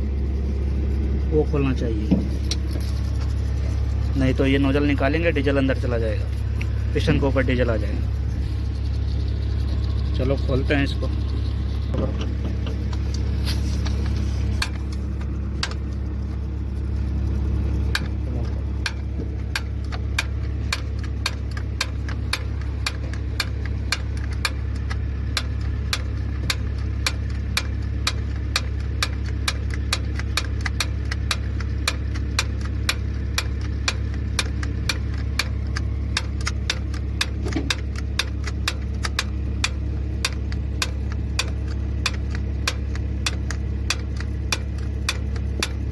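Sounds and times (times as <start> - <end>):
low machine hum: 0.0 - 45.9
hand tools clicking on metal: 18.8 - 45.9.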